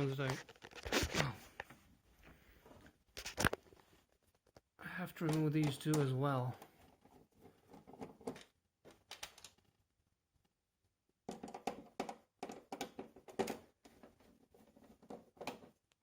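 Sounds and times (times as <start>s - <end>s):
screwdriver clicking and scraping plastic: 5.2s - 6.1s, 11.3s - 16.0s.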